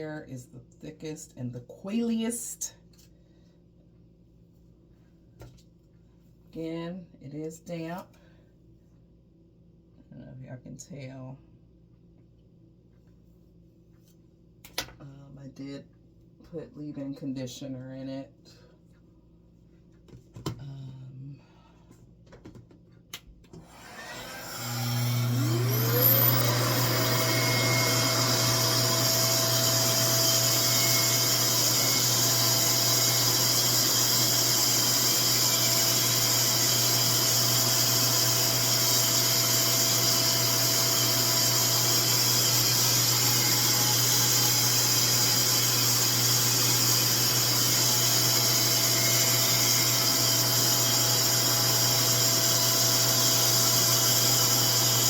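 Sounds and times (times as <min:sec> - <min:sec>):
hair dryer motor whining: 0:23.5 - 0:55.0.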